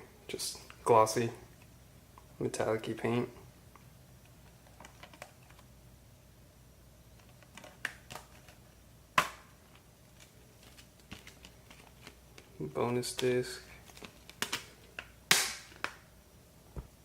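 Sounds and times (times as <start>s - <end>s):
sharp snap: 15.3s - 16.0s.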